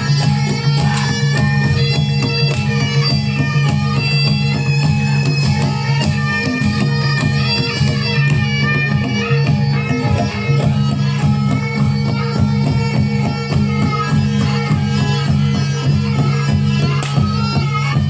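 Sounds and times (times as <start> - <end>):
reedy wind melody: 0.0 - 18.0.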